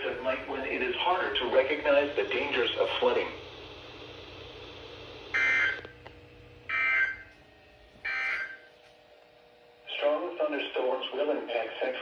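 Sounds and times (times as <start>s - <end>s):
digital data tone bursts: 5.3s - 5.8s, 8.1s - 8.6s.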